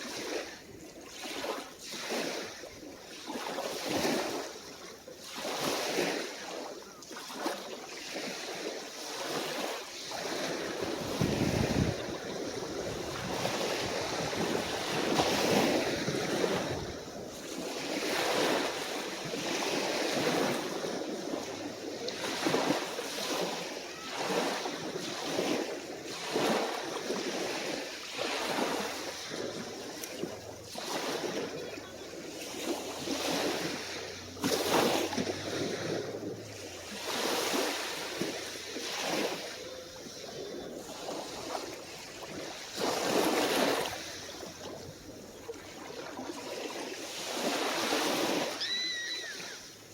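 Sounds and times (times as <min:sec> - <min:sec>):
calm waves washing ashore: 0:00.0 - 0:49.9
low wind rumble on microphone: 0:10.3 - 0:27.8.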